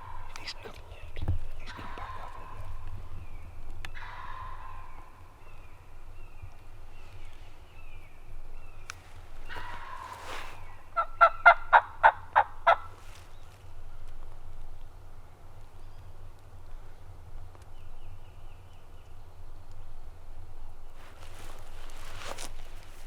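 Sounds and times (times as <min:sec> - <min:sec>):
loud turkey yelps: 0:03.8 - 0:05.8, 0:09.4 - 0:13.0
turkey gobbling: 0:09.5 - 0:13.0.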